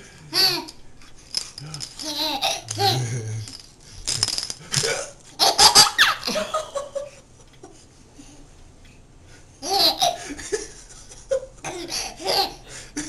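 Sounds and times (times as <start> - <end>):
baby giggling: 2.0 - 3.2, 9.6 - 10.3.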